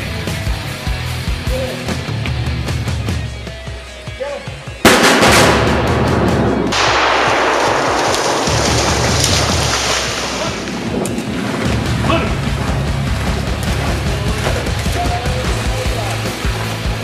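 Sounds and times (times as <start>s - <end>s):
hard rock music: 0.0s - 7.9s, 8.5s - 17.0s
shotgun blast: 4.8s - 10.4s.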